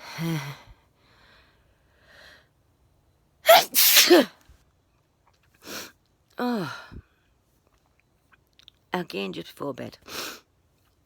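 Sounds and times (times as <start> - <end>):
faint breaths: 0.0 - 2.6
woman sneezing loudly: 3.5 - 4.4.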